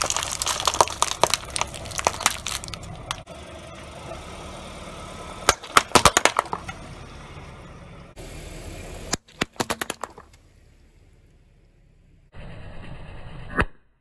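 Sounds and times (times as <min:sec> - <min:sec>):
tyre crushing brittle objects: 0:00.0 - 0:03.3, 0:05.5 - 0:06.7, 0:09.2 - 0:10.3.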